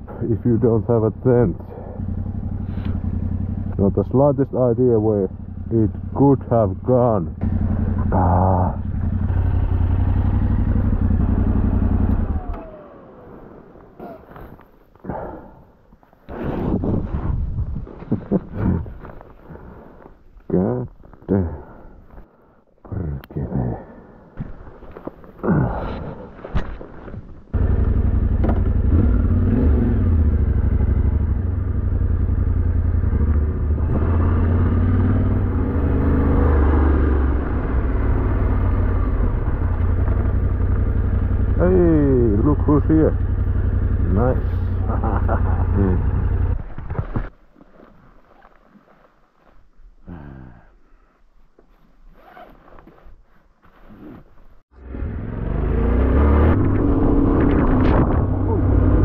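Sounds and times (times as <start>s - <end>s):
motorcycle engine running: 0.0s - 14.5s, 27.5s - 47.3s.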